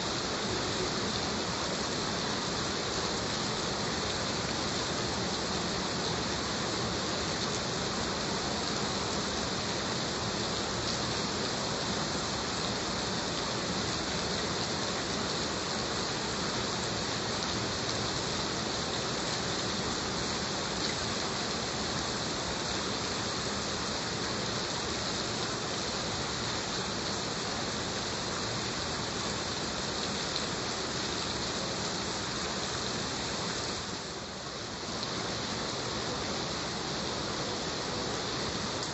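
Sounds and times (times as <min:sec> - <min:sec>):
heavy rain falling: 0:00.0 - 0:38.9.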